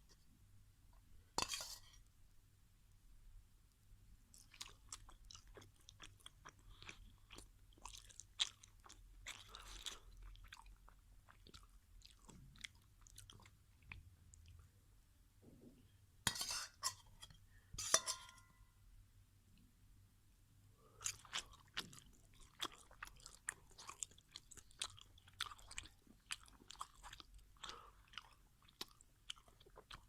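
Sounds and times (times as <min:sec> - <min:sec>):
chewing crunchy food: 0:04.3 - 0:14.7, 0:20.9 - 0:30.0.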